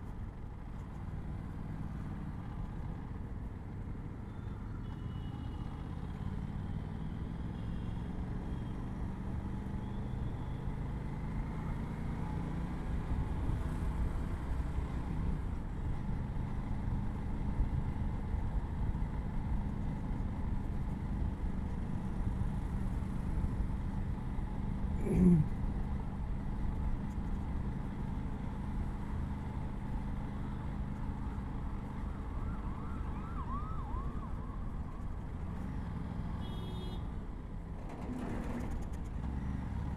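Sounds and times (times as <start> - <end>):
siren wailing: 31.9 - 35.0.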